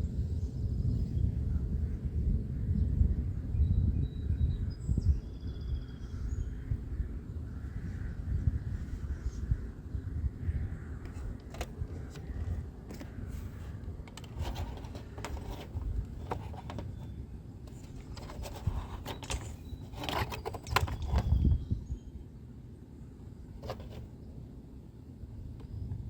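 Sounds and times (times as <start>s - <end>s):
wind on microphone: 0.0s - 22.1s
clicks and rattles: 11.1s - 13.1s, 14.0s - 17.1s, 17.7s - 21.4s, 23.6s - 24.1s.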